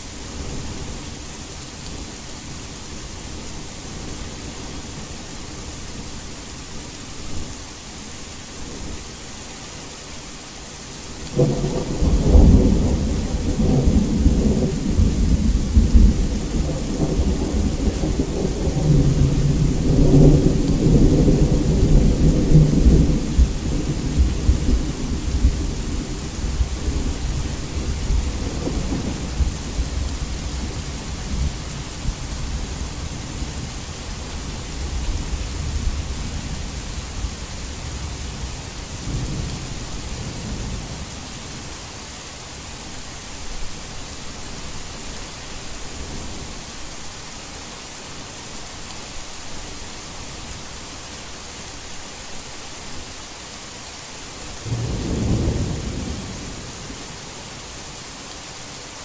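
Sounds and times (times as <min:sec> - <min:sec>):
heavy rain: 0:00.0 - 0:59.0
rolling thunder: 0:11.4 - 0:41.2, 0:54.6 - 0:57.2.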